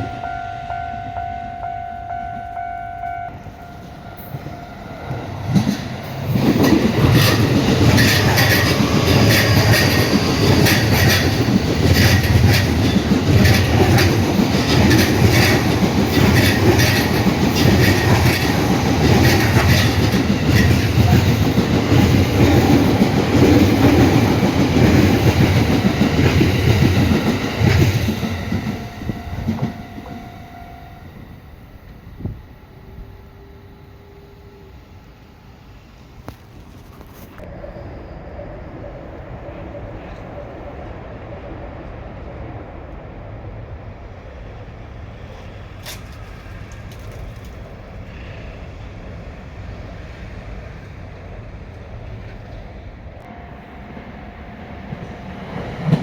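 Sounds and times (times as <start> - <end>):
level crossing warning bell: 0.0 - 34.8, 53.2 - 56.0
train wheels clattering over rail joints: 4.4 - 30.3, 45.4 - 48.4.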